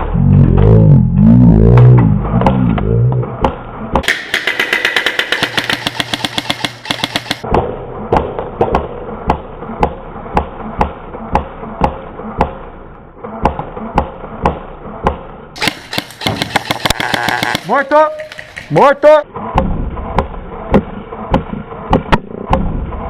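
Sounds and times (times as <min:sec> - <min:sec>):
airsoft gun firing bursts: 0:04.0 - 0:07.4, 0:15.6 - 0:17.9.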